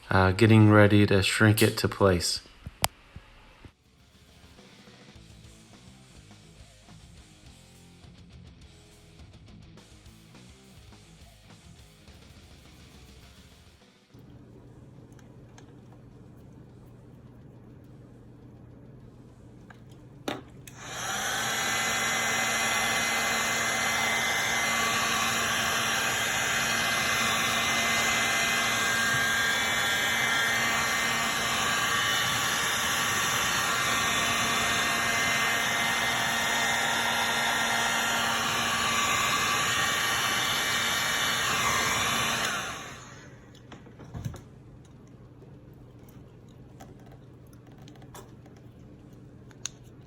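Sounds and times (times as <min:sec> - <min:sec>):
heat gun blowing: 0:20.7 - 0:43.5.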